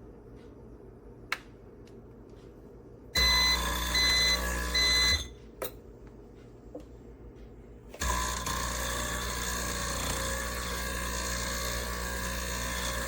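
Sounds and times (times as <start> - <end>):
short electronic beeps: 3.2 - 5.3.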